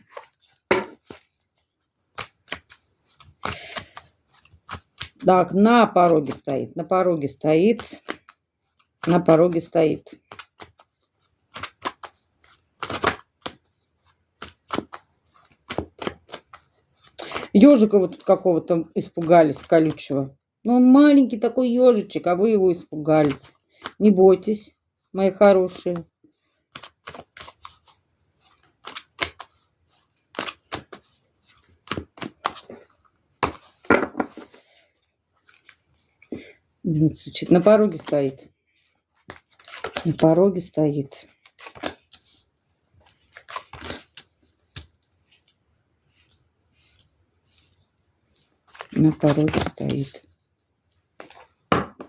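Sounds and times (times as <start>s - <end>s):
cards rustling: 0.0s - 20.2s, 21.2s - 52.0s
cards tapping and flicking on table: 0.1s - 1.3s, 2.1s - 5.2s, 10.2s - 10.8s, 12.8s - 13.7s, 14.4s - 16.6s, 31.7s - 32.8s, 33.4s - 34.6s, 51.2s - 52.0s
cards snapping and tapping: 2.1s - 5.2s, 7.8s - 17.5s, 23.2s - 24.0s, 26.7s - 27.9s, 28.5s - 29.6s, 30.3s - 34.6s, 39.2s - 40.3s, 41.6s - 42.2s, 43.1s - 45.0s.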